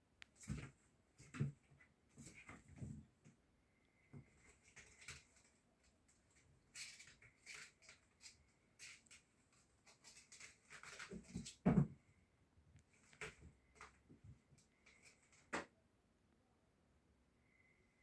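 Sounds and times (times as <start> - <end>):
soft taps and rustles: 0.2 - 3.4, 12.8 - 15.7.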